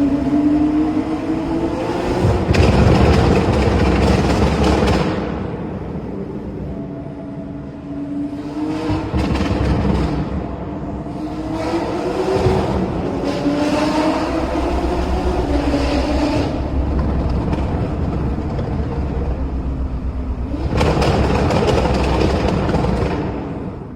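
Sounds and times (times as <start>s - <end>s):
turbocharged car engine revving: 11.1s - 23.9s.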